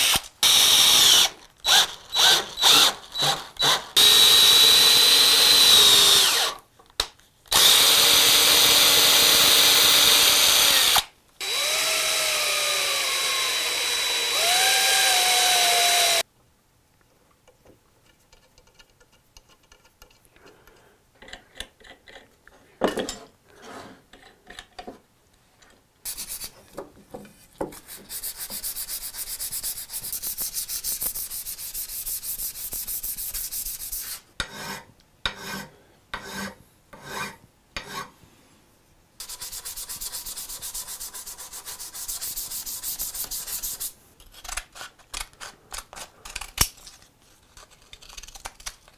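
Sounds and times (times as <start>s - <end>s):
small power tool whining: 0.0s - 6.6s, 7.5s - 16.2s.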